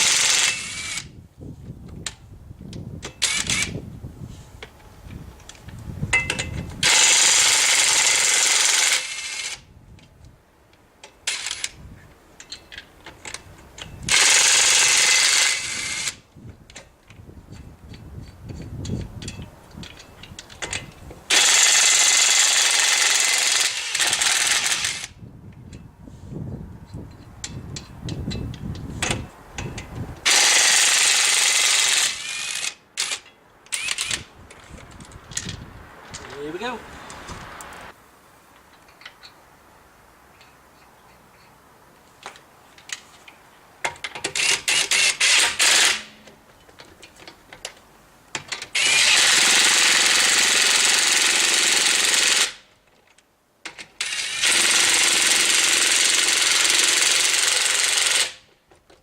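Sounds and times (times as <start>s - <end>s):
metal parts clicking and clunking: 4.6s - 7.0s, 8.4s - 21.7s, 31.6s - 36.5s, 38.5s - 39.4s, 42.2s - 49.3s, 52.8s - 54.6s.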